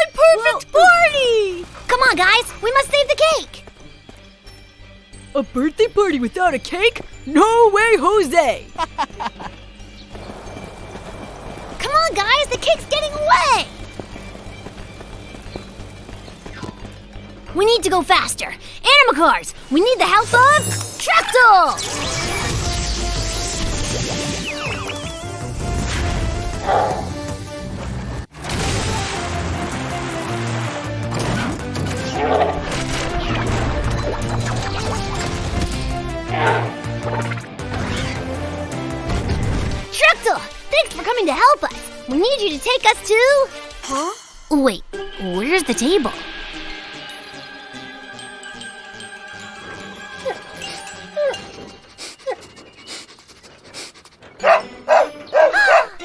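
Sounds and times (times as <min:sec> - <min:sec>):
background music: 0:00.0 - 0:56.0
dog barking: 0:26.6 - 0:27.2, 0:32.1 - 0:32.6, 0:36.3 - 0:36.8, 0:54.4 - 0:56.0
dog whining: 0:26.6 - 0:27.2, 0:51.2 - 0:56.0
cartoon dog sniffing: 0:51.2 - 0:56.0.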